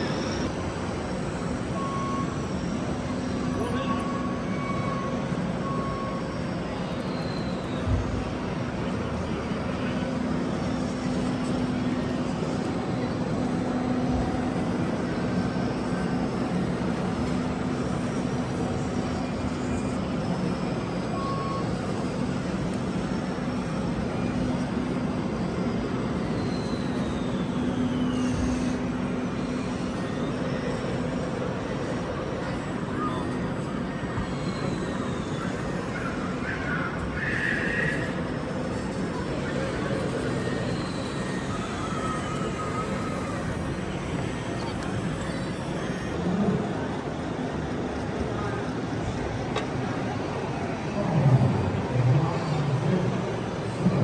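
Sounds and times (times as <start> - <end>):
murmur of voices: 0.0 - 54.0
small motor humming: 0.0 - 54.0.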